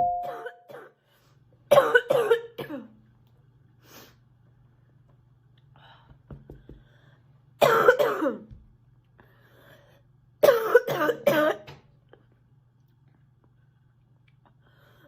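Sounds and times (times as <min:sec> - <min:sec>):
girl coughing: 0:00.2 - 0:01.0, 0:01.7 - 0:02.9, 0:07.6 - 0:08.5, 0:10.4 - 0:11.7.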